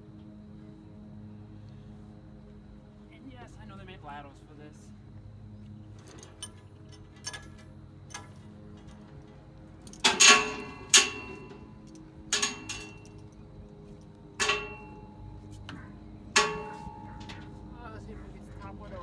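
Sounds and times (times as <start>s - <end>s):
metal-on-metal clanks ringing: 6.0s - 9.2s, 9.9s - 13.3s, 14.4s - 18.7s.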